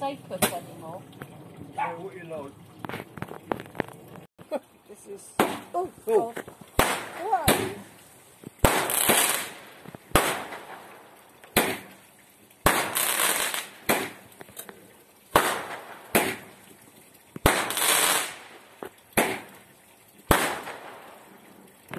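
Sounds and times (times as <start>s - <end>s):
hissing crackle: 0.5s - 21.9s
fireworks bangs: 6.8s - 8.0s, 8.6s - 12.0s, 12.6s - 14.2s, 15.3s - 16.6s, 17.4s - 19.6s, 20.3s - 21.2s.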